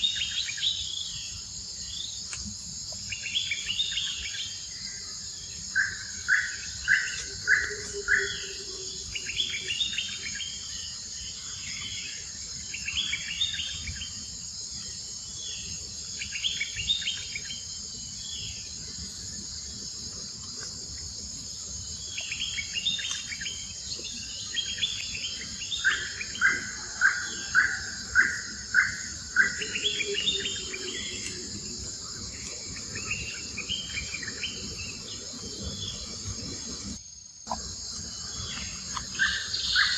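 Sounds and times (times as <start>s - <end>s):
insect drone: 0.0s - 39.9s
bird chirps: 5.6s - 10.8s, 22.0s - 31.5s, 38.0s - 39.9s.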